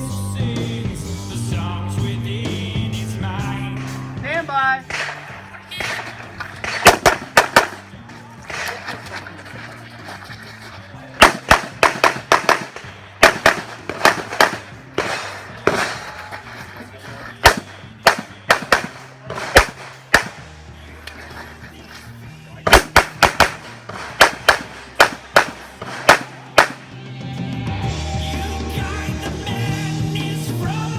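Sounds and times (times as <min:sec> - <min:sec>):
handgun rapid shots: 0:04.9 - 0:08.9, 0:11.2 - 0:16.2, 0:17.4 - 0:20.5, 0:22.7 - 0:26.9.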